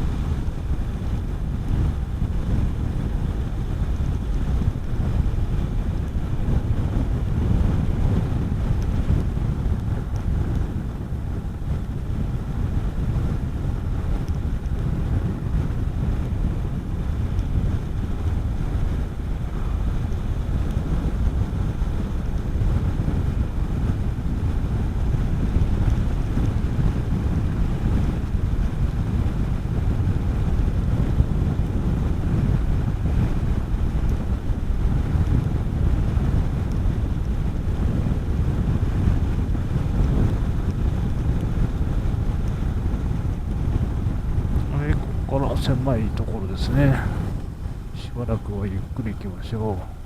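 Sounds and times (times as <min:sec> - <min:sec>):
wind rushing over microphone: 0:00.0 - 0:50.0.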